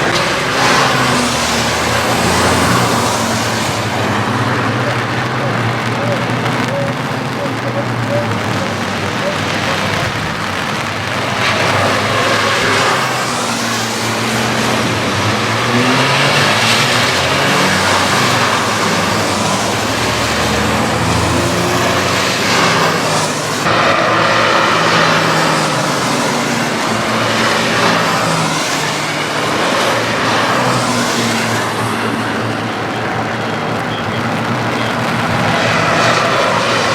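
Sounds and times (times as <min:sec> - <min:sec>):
race car engines: 0:00.0 - 0:36.9
steady rushing hiss: 0:00.0 - 0:36.9.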